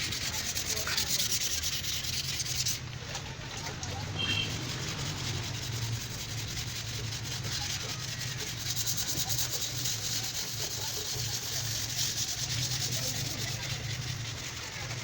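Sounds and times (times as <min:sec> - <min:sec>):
sanding car body panel: 0:00.0 - 0:02.8, 0:03.9 - 0:15.0.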